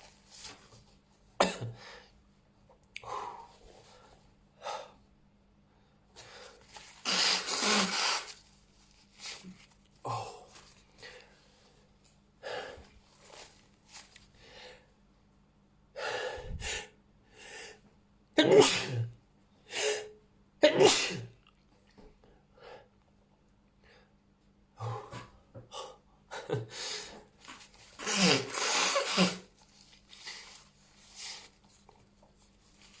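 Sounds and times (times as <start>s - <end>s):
person sneezing: 7.0s - 8.3s, 18.4s - 19.1s, 19.7s - 21.4s, 28.0s - 29.5s
person breathing: 14.4s - 14.9s, 16.0s - 17.8s.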